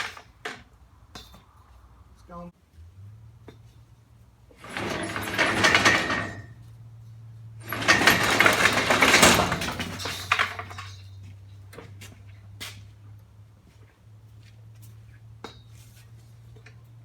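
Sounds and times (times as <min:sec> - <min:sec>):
steel chain rattling: 0:04.6 - 0:06.6, 0:07.6 - 0:11.1.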